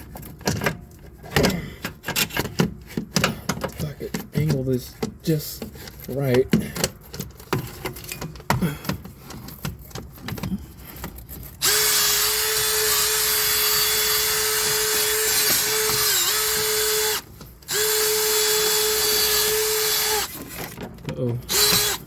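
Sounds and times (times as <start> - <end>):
electric drill running: 11.6 - 20.3, 21.5 - 22.0.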